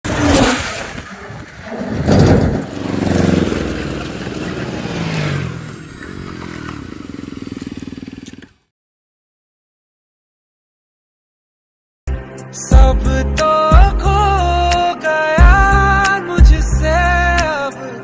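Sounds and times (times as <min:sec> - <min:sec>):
vehicle engine revving: 0:00.0 - 0:08.6.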